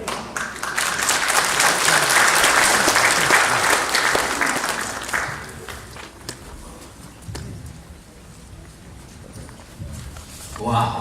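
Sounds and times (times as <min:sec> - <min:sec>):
audience applauding: 0:00.0 - 0:06.2.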